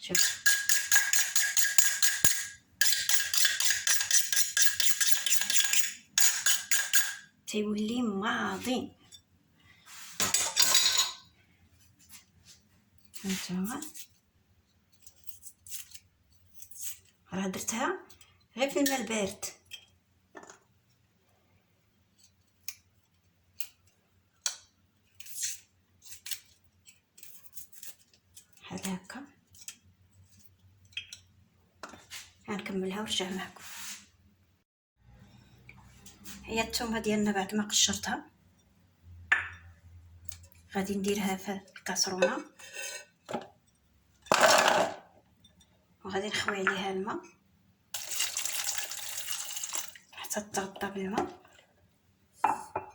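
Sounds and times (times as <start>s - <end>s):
knife scraping garlic skins: 0.1s - 7.2s, 13.1s - 14.2s, 14.9s - 17.2s, 24.5s - 28.6s, 29.4s - 31.1s
knife sharpening scraping strokes: 0.2s - 7.2s.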